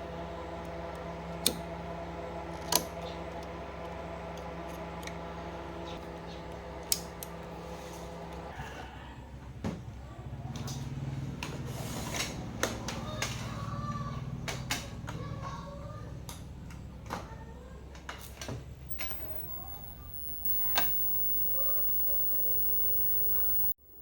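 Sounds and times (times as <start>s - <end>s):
steady low hum: 18.9s - 24.0s.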